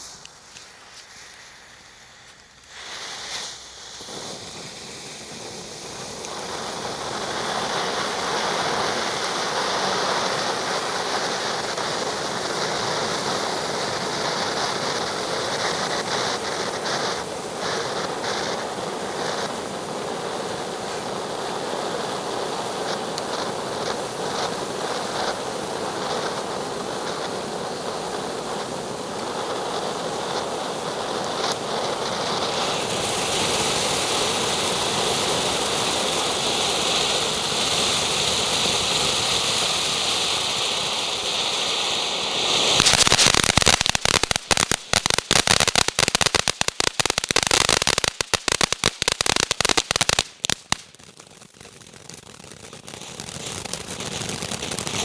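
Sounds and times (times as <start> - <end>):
firework hissing and crackling: 0.0 - 55.0.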